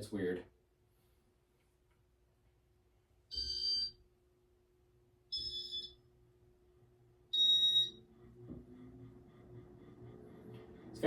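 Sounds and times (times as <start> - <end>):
high electronic beeps: 7.4 - 8.0.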